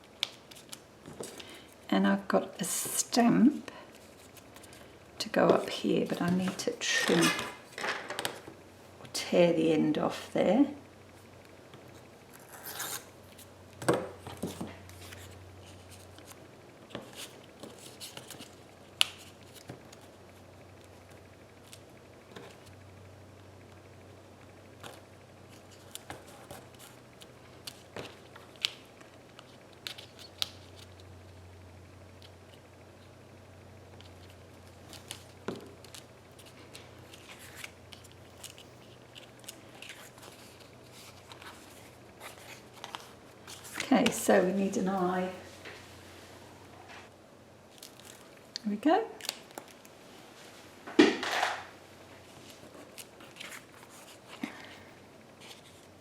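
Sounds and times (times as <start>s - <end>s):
low steady hum: 0.0s - 56.0s
paper rustling: 34.0s - 44.2s, 52.2s - 55.9s.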